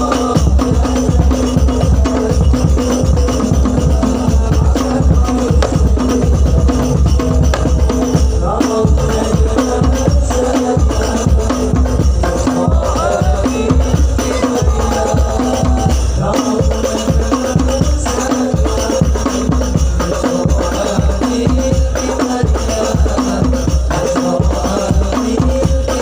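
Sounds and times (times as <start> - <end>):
drums and tambourine rhythm: 0.0 - 26.0
pitched melody line: 13.1 - 16.1.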